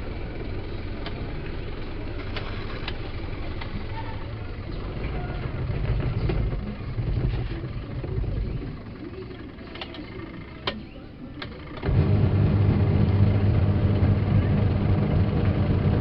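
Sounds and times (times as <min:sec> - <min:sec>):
washing machine motor humming: 0:00.0 - 0:16.0
sharp clicks: 0:09.7 - 0:11.9.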